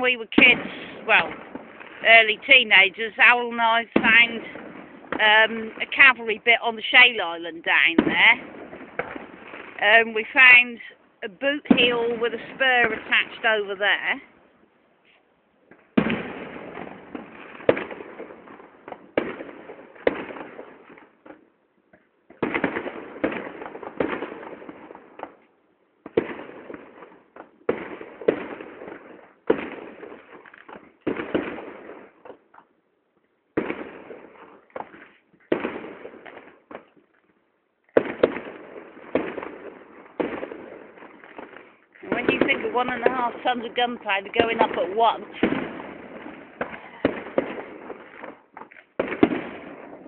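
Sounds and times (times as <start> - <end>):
fireworks bursting with echoing bangs: 0.0 - 32.8, 33.4 - 50.0.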